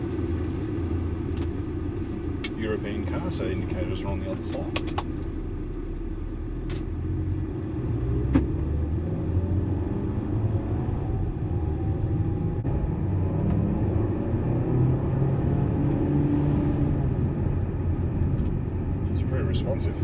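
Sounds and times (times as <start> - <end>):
car road and engine rumble: 0.0 - 20.0.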